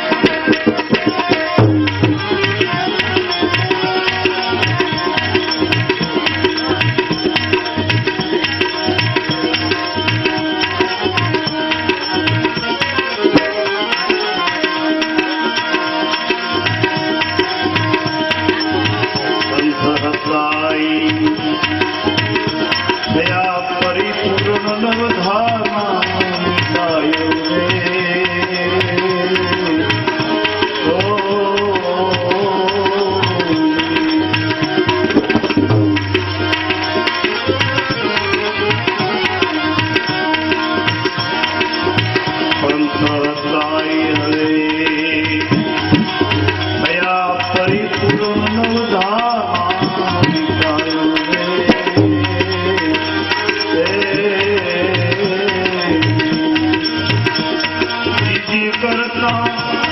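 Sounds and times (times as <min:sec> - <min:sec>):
held melodic notes: 0:00.0 - 0:59.9
tabla rhythm: 0:00.0 - 0:59.9.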